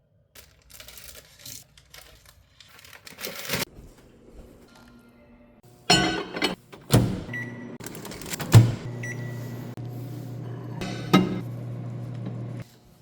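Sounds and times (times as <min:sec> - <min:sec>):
microwave oven humming: 0:05.6 - 0:13.0
microwave beep: 0:05.9 - 0:12.6.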